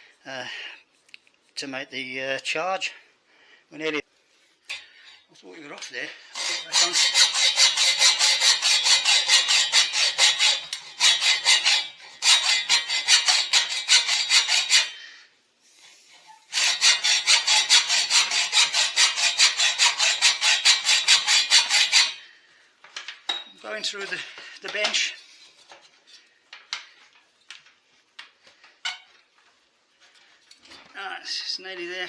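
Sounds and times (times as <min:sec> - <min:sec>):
hacksaw cutting metal: 0:06.3 - 0:15.0, 0:16.4 - 0:22.3.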